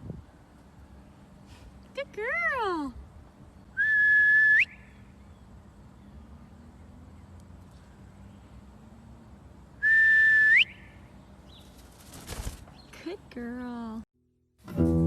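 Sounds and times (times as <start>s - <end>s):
high whistle flicking upward: 3.8s - 4.8s, 9.8s - 10.7s.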